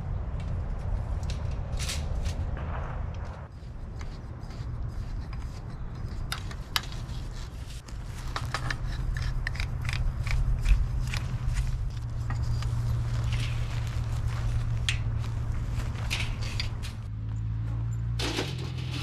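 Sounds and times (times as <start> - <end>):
steady low hum: 0.0 - 18.2
sharp clicks and snipping: 8.3 - 12.1.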